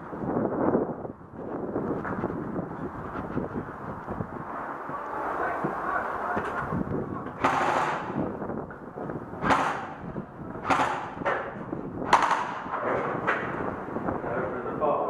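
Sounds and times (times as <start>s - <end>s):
airsoft gun bursts: 7.4s - 8.2s, 9.4s - 10.0s, 10.6s - 11.2s, 12.1s - 12.7s.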